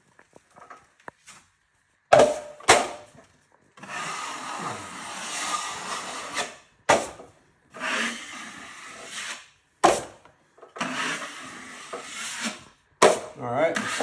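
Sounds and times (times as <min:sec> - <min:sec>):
drywall knife scraping compound: 0:03.8 - 0:14.0.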